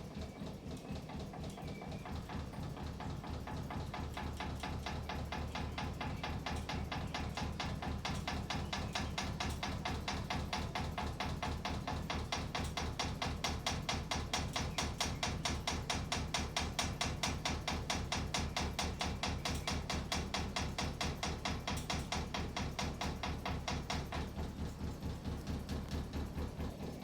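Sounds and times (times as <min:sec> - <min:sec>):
ceiling fan knocking: 0:00.3 - 0:27.0
low motor hum: 0:21.4 - 0:27.0.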